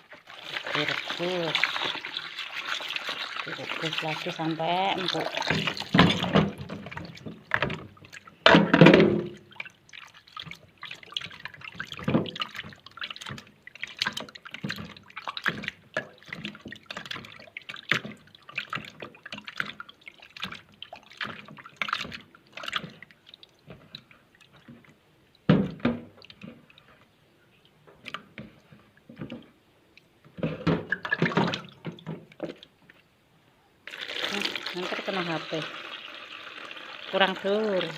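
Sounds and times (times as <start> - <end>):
water splashing and dripping: 0.0 - 33.1, 33.8 - 37.9.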